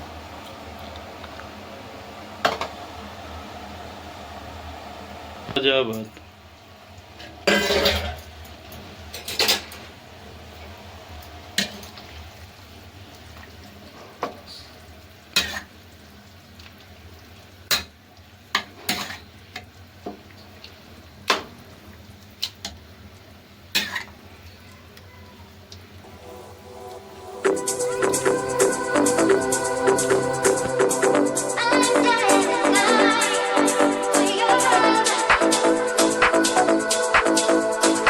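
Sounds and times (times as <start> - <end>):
metal pots clinking: 7.4 - 8.3.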